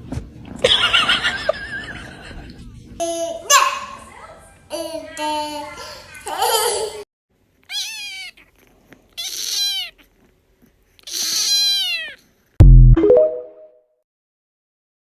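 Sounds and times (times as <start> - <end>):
cat meowing: 7.6 - 10.1, 11.0 - 12.3
brief tone: 12.6 - 13.8.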